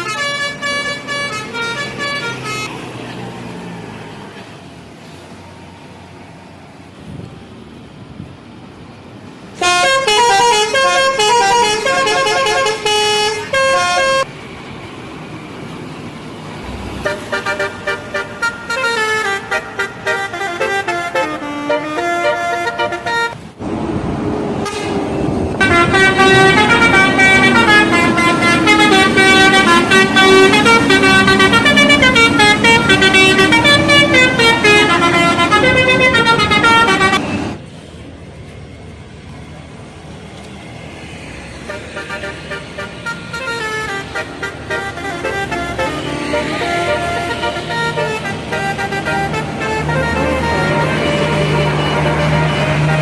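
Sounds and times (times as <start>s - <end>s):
bus horns playing stepped tunes: 0.0s - 2.7s, 9.6s - 14.3s, 17.0s - 23.5s, 24.6s - 37.6s, 41.6s - 53.0s.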